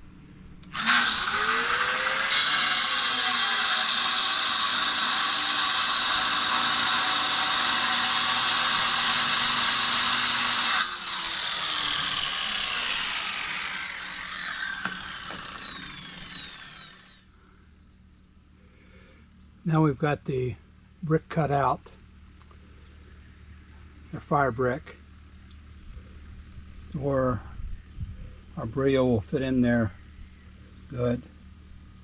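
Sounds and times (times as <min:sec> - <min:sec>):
power saw cutting brick: 0:00.6 - 0:17.2
saw blade winding down whine: 0:00.6 - 0:17.3.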